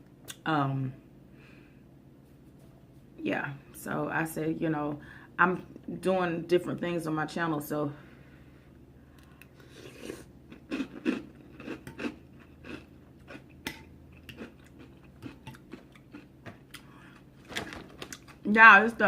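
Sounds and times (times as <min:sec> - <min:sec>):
person chewing soup: 0:09.2 - 0:17.4.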